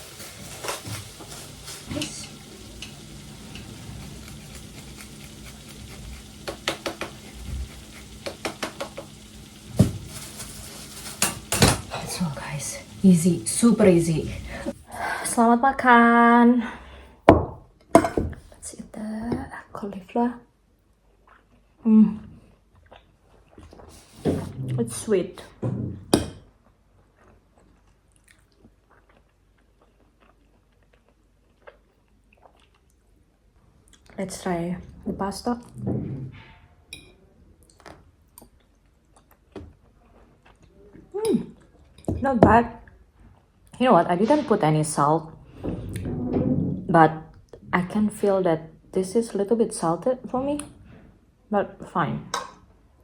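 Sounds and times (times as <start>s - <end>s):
low kitchen hum: 0.0s - 19.9s
person chewing: 4.0s - 8.2s, 27.0s - 33.2s, 37.6s - 41.0s.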